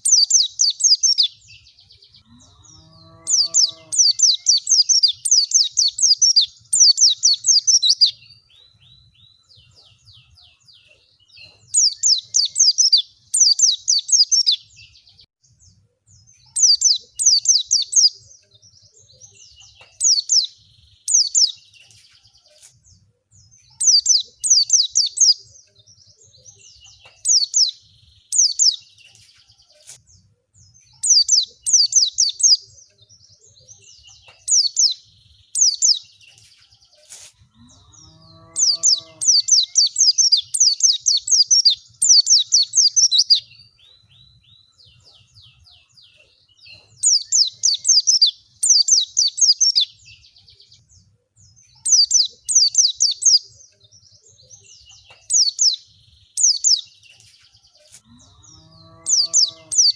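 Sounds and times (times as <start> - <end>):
bird twittering song: 0.0 - 59.9.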